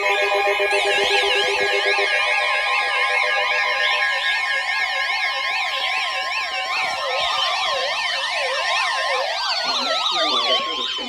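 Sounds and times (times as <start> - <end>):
warbling alert tones: 9.6 - 11.0.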